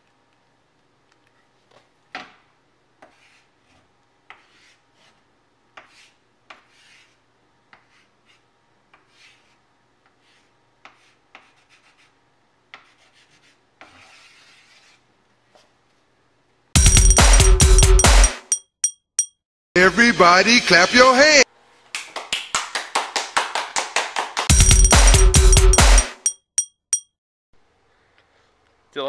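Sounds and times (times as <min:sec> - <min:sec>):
scratching and scraping strokes: 0:03.0 - 0:05.2, 0:05.8 - 0:07.2, 0:09.0 - 0:12.2, 0:12.8 - 0:15.7
loud burst of music: 0:16.8 - 0:18.5, 0:24.5 - 0:26.2.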